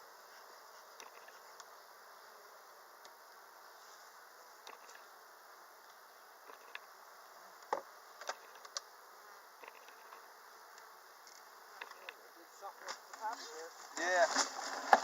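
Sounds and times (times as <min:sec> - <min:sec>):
honeybees buzzing: 0:00.0 - 0:15.0.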